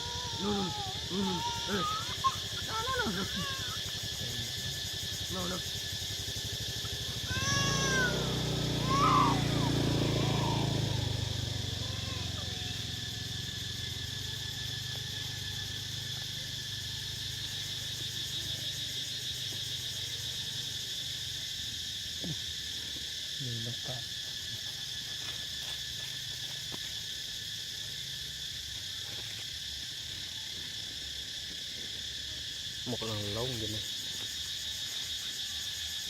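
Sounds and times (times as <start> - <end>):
insect chorus: 0.0 - 36.0.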